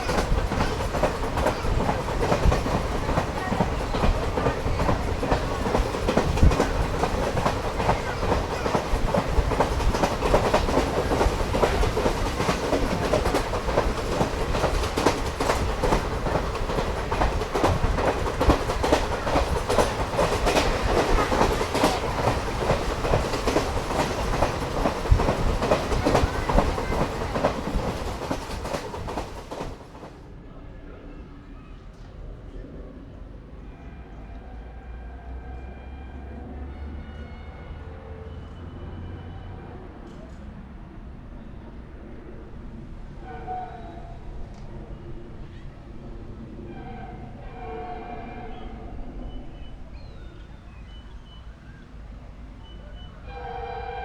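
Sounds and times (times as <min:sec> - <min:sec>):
train wheels clattering over rail joints: 0:00.0 - 0:30.1
rush of passing train: 0:00.0 - 0:54.0.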